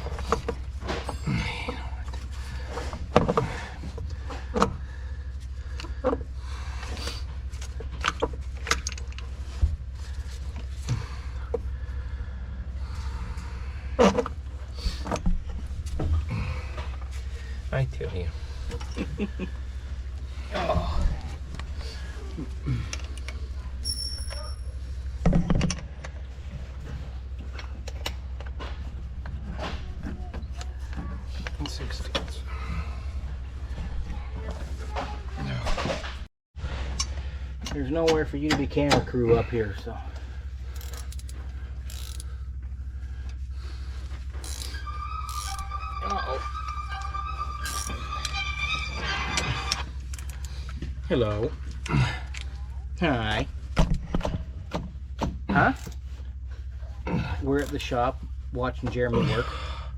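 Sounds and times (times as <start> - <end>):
steady low hum: 0.0 - 59.9
hand tools and metal parts clinking: 7.6 - 9.3, 22.8 - 25.0, 40.7 - 42.3, 44.3 - 50.8
metal tools clinking: 23.8 - 24.8, 40.7 - 42.3
high metallic ring: 23.8 - 24.9.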